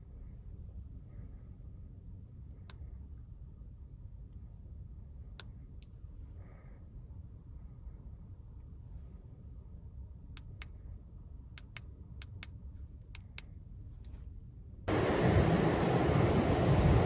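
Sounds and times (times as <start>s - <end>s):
sharp small clicks: 5.4s - 5.9s, 10.3s - 10.8s, 11.5s - 13.6s
low rumble: 13.8s - 17.0s
loud wind noise: 14.9s - 17.0s.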